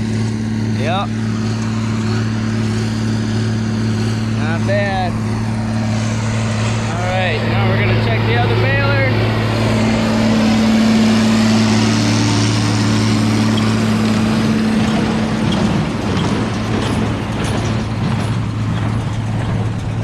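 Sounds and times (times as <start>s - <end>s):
baler machinery noise: 0.0s - 20.0s
tractor engine running: 0.0s - 20.0s.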